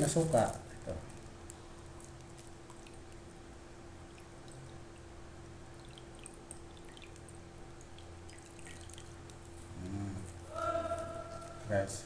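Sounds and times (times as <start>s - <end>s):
liquid trickling and dripping: 0.0s - 10.5s
faint steady hum: 0.0s - 12.0s
small splashy ticks: 1.1s - 3.4s, 5.8s - 9.5s.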